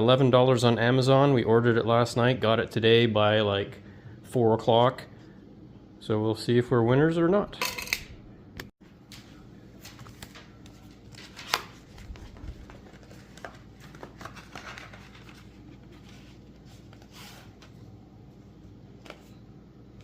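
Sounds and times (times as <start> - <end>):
mica sheets clicking and rustling: 9.2 - 17.7.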